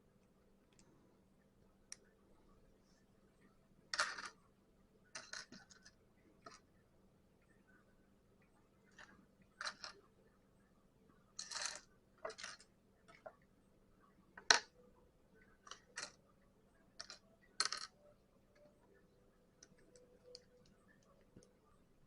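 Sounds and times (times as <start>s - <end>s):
plastic toy bricks clicking: 4.0s - 4.4s, 5.2s - 6.6s, 9.6s - 10.0s, 11.4s - 13.3s, 14.4s - 14.7s, 15.7s - 16.2s, 17.0s - 18.0s.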